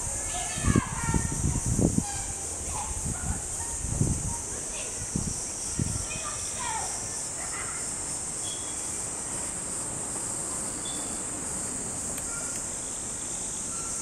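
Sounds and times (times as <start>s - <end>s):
insects droning: 0.0s - 14.0s
faint short chirps: 12.2s - 12.7s.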